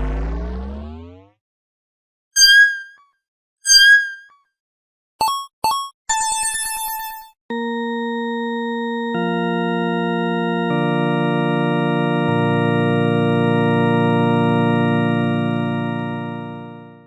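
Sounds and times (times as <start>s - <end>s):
organ-like synthesized chord: 0.0s - 1.3s, 7.5s - 17.0s.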